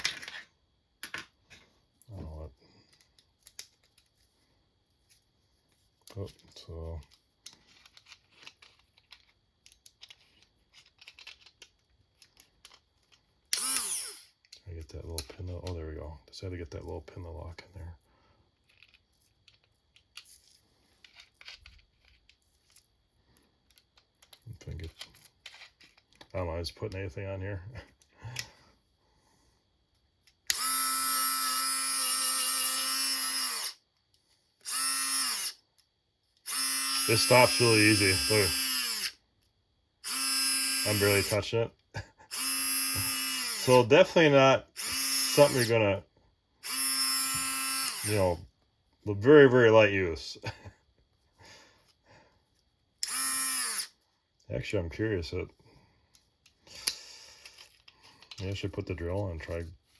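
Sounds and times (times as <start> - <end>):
rotary tool motor whining: 13.5 - 14.4, 30.5 - 33.8, 34.6 - 35.6, 36.4 - 39.2, 40.0 - 41.4, 42.3 - 43.9, 44.7 - 45.8, 46.6 - 48.3, 53.0 - 54.0.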